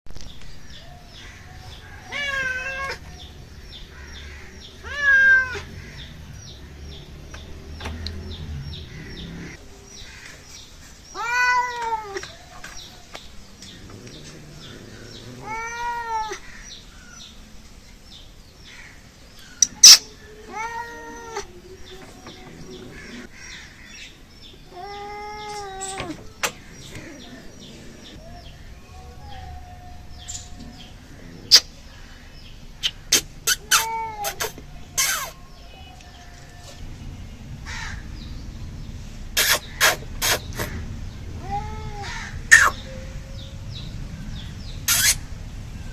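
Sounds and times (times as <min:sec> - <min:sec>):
cat meowing: 0:02.0 - 0:03.3, 0:04.8 - 0:06.0, 0:11.1 - 0:12.6, 0:13.8 - 0:16.4, 0:19.8 - 0:23.3, 0:24.6 - 0:31.0, 0:33.4 - 0:36.0, 0:41.3 - 0:43.0.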